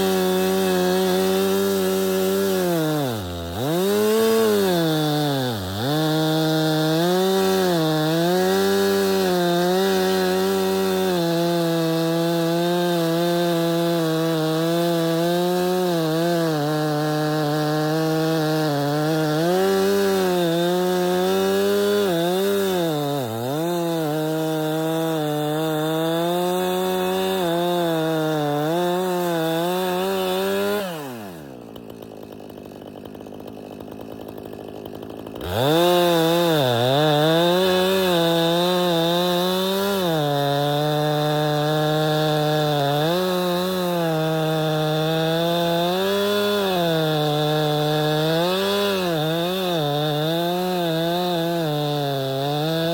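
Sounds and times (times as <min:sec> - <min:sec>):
chainsaw cutting wood: 0:00.0 - 0:52.9
chainsaw idling: 0:00.0 - 0:52.9.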